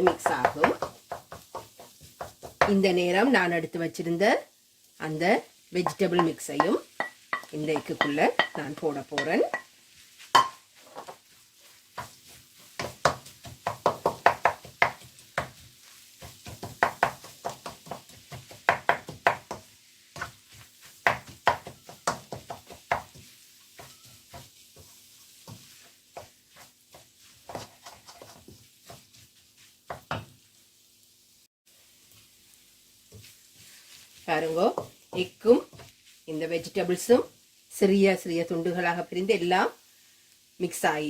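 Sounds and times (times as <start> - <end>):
faint sizzle: 0.0 - 41.0
spoon scraping a frying pan: 5.8 - 30.5, 33.1 - 36.2.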